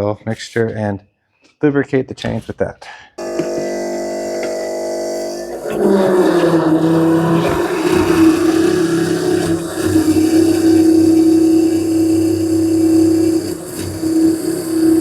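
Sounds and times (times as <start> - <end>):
engine droning: 3.2 - 15.0.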